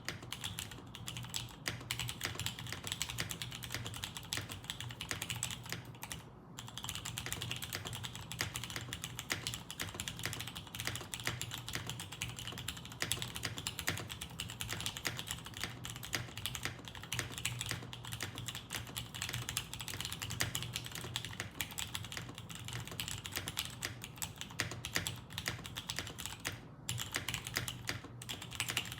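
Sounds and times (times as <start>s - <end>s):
mechanical keyboard typing: 0.0s - 28.9s.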